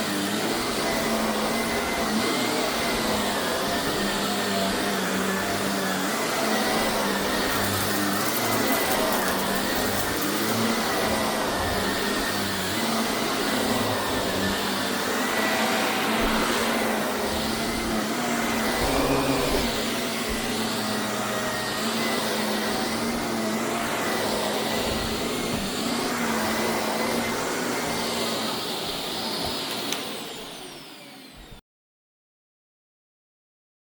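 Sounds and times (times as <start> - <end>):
vacuum cleaner motor whine: 0.0 - 31.6.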